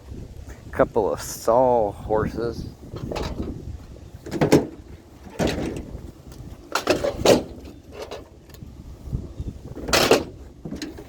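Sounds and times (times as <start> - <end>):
steady low rumble: 0.0 - 11.0
junk clunking and rattling: 2.8 - 11.0.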